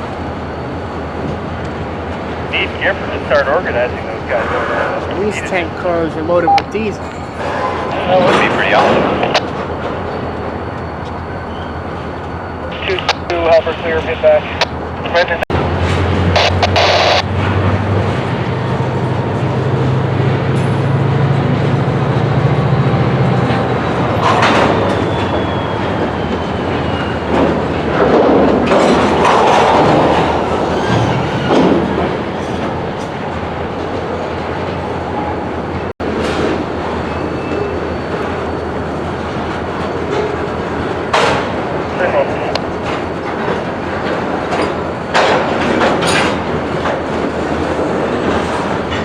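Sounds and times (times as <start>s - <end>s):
diesel locomotive engine drone: 0.0s - 49.0s
train cars clicking over rails: 5.0s - 13.6s, 15.7s - 35.4s, 36.0s - 49.0s
faint wheel squeal: 10.1s - 12.7s, 24.8s - 27.3s, 37.0s - 38.7s.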